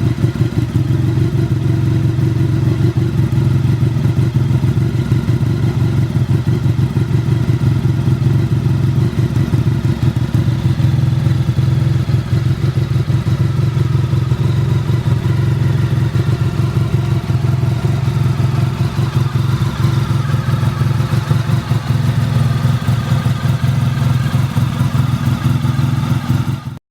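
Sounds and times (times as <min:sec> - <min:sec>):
motorcycle engine idling: 0:00.0 - 0:26.8.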